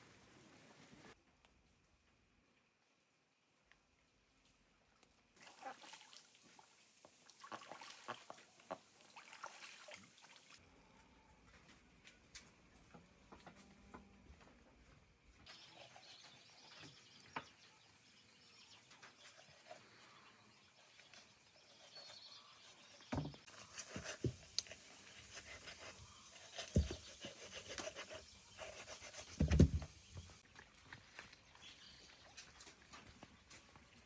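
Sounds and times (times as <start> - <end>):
faint bird chirps: 15.5 - 23.5.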